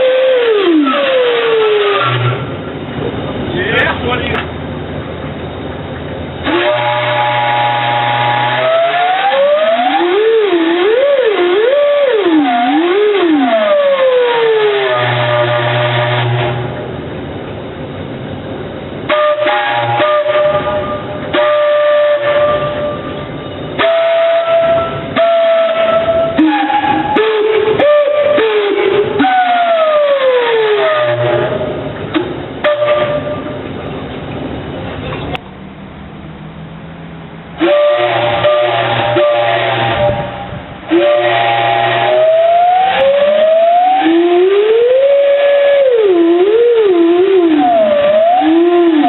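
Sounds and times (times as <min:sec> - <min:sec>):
steam whistle blasts: 0:00.0 - 0:02.6, 0:06.4 - 0:16.8, 0:19.0 - 0:31.8, 0:32.6 - 0:33.6, 0:37.6 - 0:49.0.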